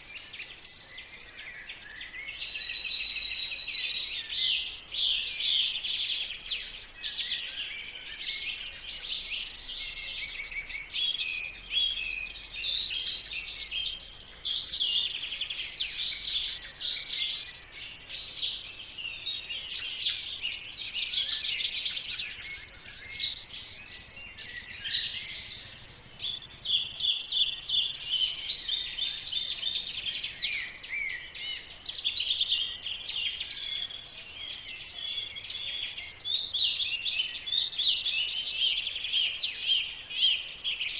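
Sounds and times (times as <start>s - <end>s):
songbirds chirping and trilling: 0.0s - 40.9s.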